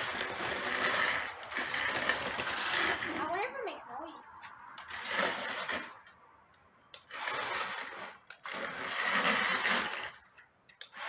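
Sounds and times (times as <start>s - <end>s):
toy electric motor whirring: 0.0s - 3.5s, 4.4s - 6.2s, 6.9s - 11.0s.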